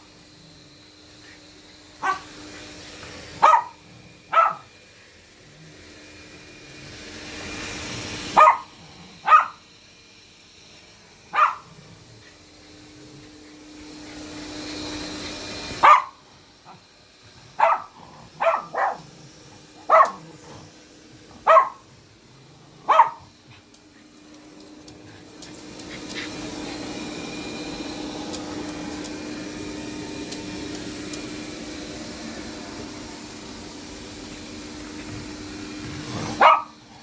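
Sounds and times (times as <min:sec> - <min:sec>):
robot vacuum whirring: 0:00.0 - 0:37.0
dog barking: 0:02.0 - 0:02.3, 0:03.4 - 0:04.7, 0:08.4 - 0:09.6, 0:11.3 - 0:11.7, 0:15.8 - 0:16.8, 0:17.6 - 0:19.0, 0:19.8 - 0:20.3, 0:21.4 - 0:21.8, 0:22.8 - 0:23.3, 0:36.4 - 0:36.8.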